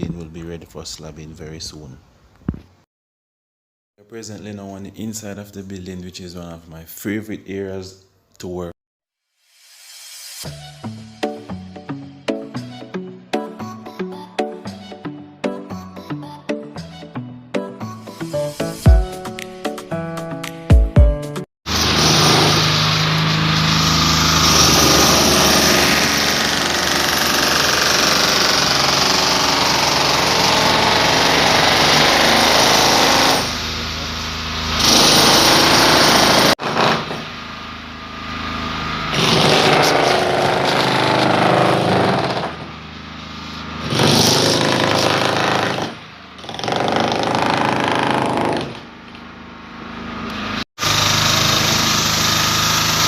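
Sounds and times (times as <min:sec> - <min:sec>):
demolition hammer chipping concrete: 0:21.7 - 0:33.6, 0:34.8 - 0:37.2, 0:39.1 - 0:42.7, 0:43.8 - 0:48.9, 0:50.8 - 0:53.0.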